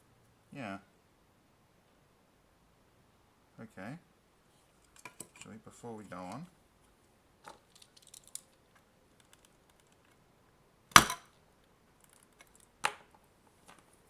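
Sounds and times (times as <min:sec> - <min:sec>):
plastic case cracking apart: 0:10.9 - 0:11.3.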